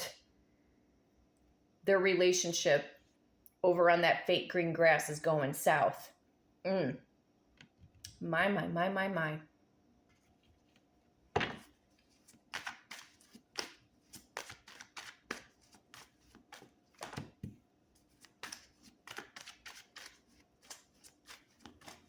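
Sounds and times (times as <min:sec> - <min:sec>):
cards shuffling clicks: 0:12.1 - 0:22.0.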